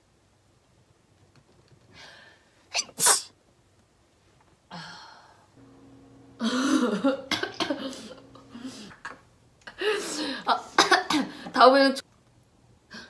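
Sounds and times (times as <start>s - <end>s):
woman sneezing: 2.7s - 3.3s.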